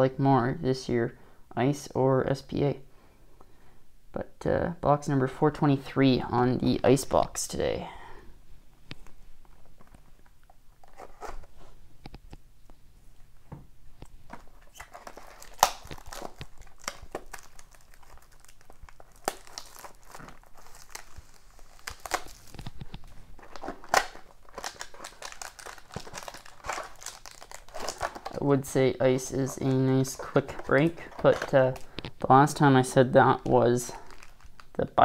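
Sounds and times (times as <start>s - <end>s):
shrink wrap crinkling and tearing: 9.0s - 11.6s, 14.1s - 35.0s.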